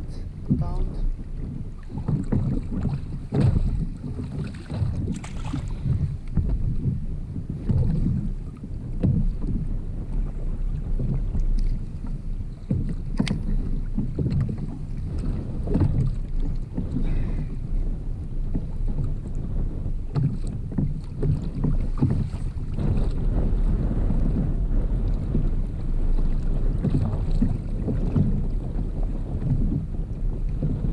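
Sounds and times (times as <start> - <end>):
water sounds: 0.0 - 30.9
wind rumbling on microphone: 0.0 - 30.9
knocks on kayak: 1.9 - 9.7, 12.6 - 17.4, 20.1 - 25.6.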